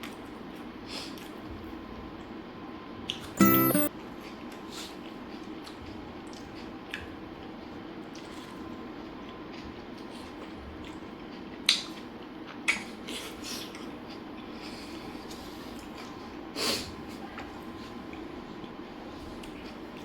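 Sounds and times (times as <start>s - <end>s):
food being chewed: 5.3s - 16.3s.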